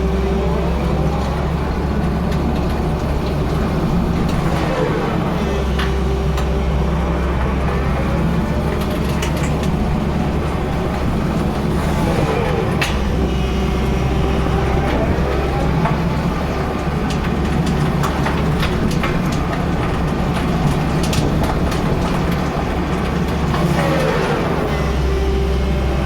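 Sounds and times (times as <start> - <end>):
excavator engine hum: 0.0 - 26.0.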